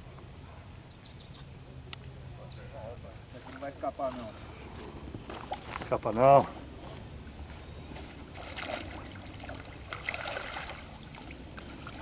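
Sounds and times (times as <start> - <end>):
water splashing and trickling: 3.2 - 6.4, 8.0 - 12.0.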